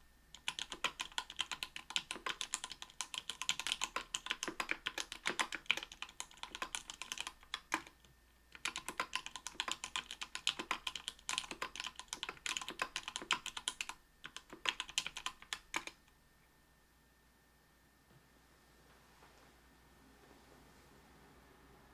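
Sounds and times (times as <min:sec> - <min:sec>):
keyboard typing: 0:00.3 - 0:16.1.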